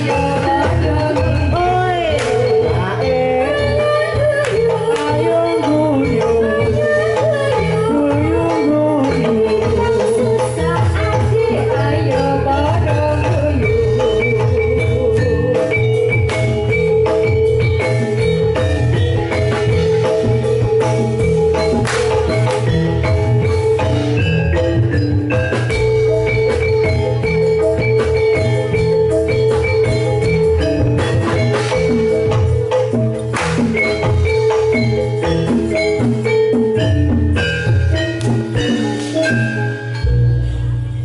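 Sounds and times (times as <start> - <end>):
metallophones ringing melody: 0.0 - 41.0
heavy bass: 10.7 - 34.9, 40.0 - 41.0.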